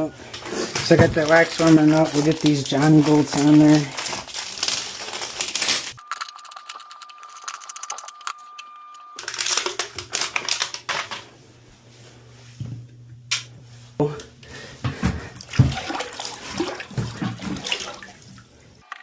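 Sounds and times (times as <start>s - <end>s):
small metal parts clinking: 1.6s - 8.4s.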